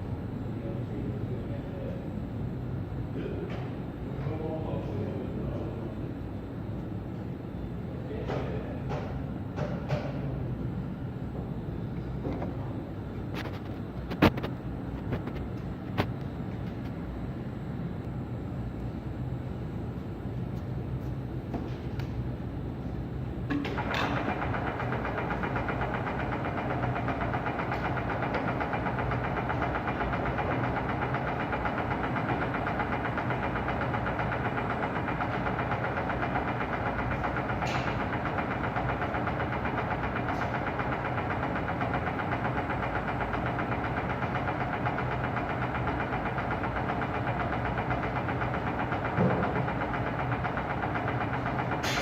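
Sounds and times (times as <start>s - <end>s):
pillar drill motor humming: 23.3s - 52.0s.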